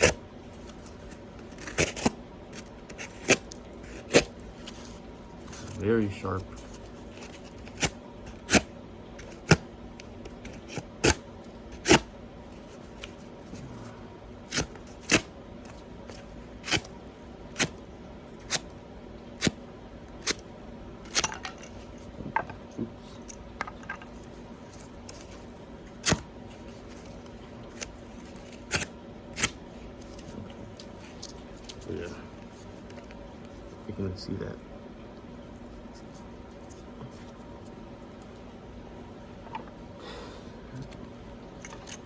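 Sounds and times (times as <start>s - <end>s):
faint steady hum: 0.0s - 42.0s
knife cutting cardboard clicks: 26.0s - 26.3s.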